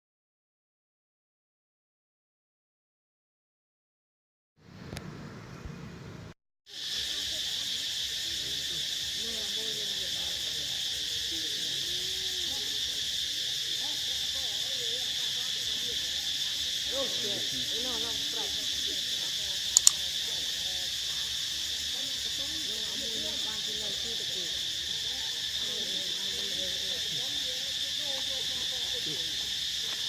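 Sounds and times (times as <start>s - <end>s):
insect chorus drone: 6.7s - 30.0s
sharp clicks: 19.8s - 20.0s.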